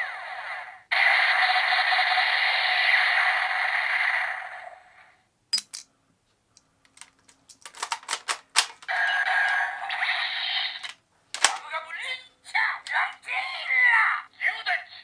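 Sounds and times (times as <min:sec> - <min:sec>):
plastic toy gun clicks: 0:06.9 - 0:09.6, 0:10.8 - 0:11.8.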